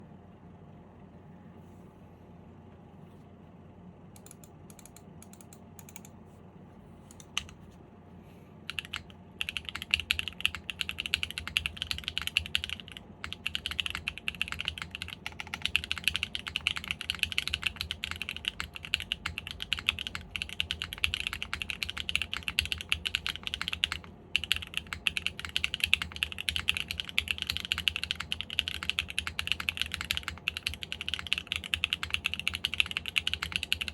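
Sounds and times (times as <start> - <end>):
mechanical keyboard typing: 4.2 - 6.1, 7.1 - 7.6, 8.7 - 33.9.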